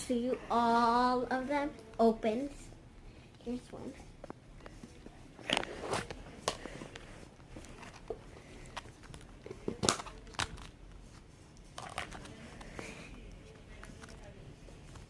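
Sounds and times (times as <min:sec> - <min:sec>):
plastic containers clicking and crinkling: 0:04.3 - 0:10.8, 0:11.8 - 0:12.9.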